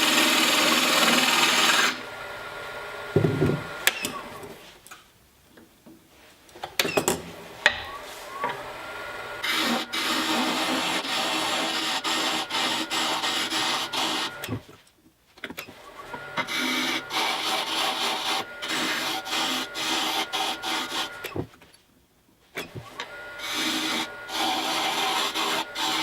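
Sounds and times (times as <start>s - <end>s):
gouge scraping wood on lathe: 0.0s - 2.0s, 9.4s - 14.6s, 16.1s - 21.4s, 23.4s - 26.0s
faint lathe whine: 8.0s - 14.6s, 15.9s - 21.4s, 22.9s - 26.0s.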